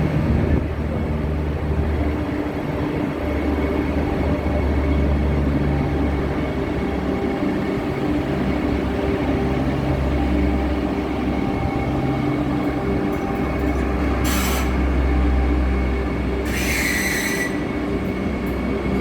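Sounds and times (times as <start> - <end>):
electric train rumble and hum: 0.0 - 19.0
high screeches: 16.4 - 17.7.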